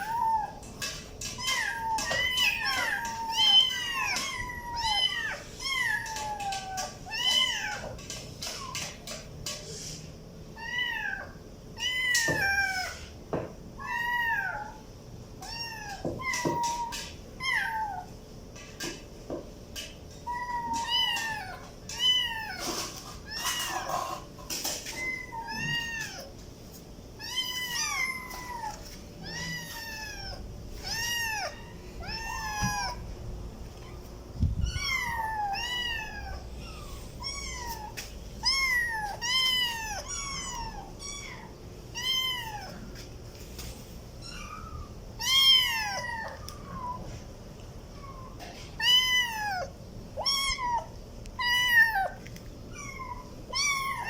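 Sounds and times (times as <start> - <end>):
kitten meowing: 1.4 - 7.9, 24.9 - 26.3, 27.2 - 33.0, 34.6 - 42.9, 44.2 - 47.0, 48.8 - 54.0.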